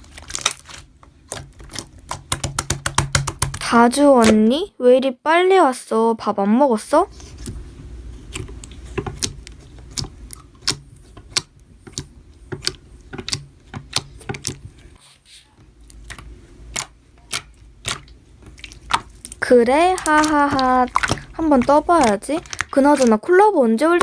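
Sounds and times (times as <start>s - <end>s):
slime clicking and popping: 0.3s - 4.4s, 8.3s - 14.6s, 15.9s - 23.2s.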